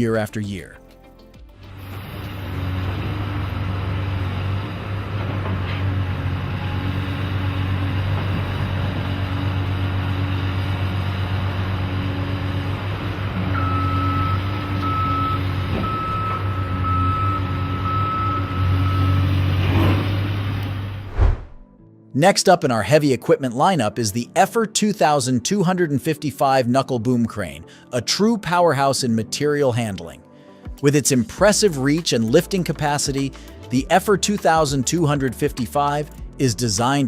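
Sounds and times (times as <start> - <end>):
diesel engine droning: 1.6 - 21.2
reversing alarm beeping: 13.5 - 19.5.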